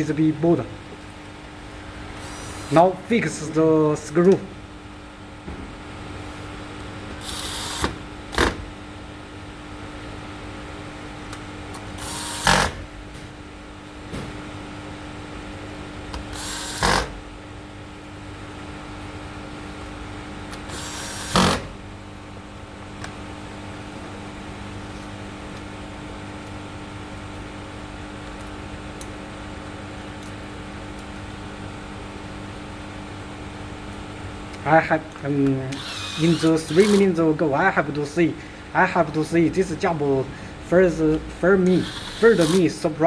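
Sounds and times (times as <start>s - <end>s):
steady background hum: 0.0s - 43.0s
electric screwdriver driving screws: 7.2s - 8.6s, 12.0s - 12.8s, 16.4s - 17.1s, 20.7s - 21.6s, 35.7s - 37.1s, 41.7s - 42.7s.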